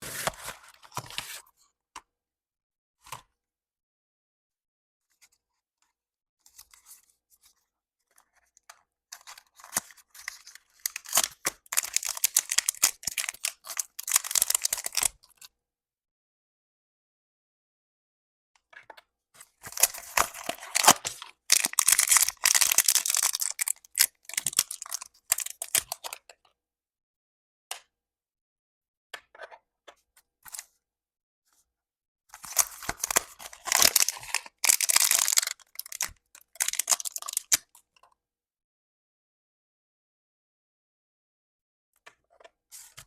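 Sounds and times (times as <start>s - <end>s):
packaging tearing and crinkling: 9.8s - 15.1s, 19.7s - 26.0s, 32.4s - 37.6s.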